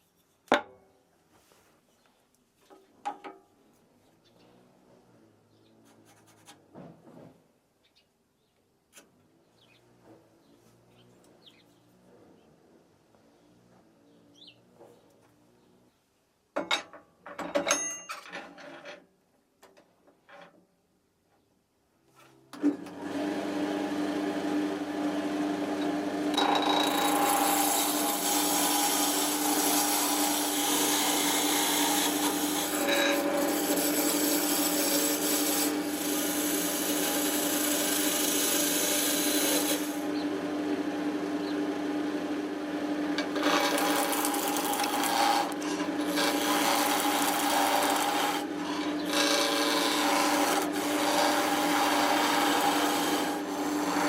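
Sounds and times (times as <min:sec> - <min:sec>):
power tool motor running: 0:22.8 - 0:54.0
tool scraping workpiece: 0:25.7 - 0:40.2, 0:43.2 - 0:54.0.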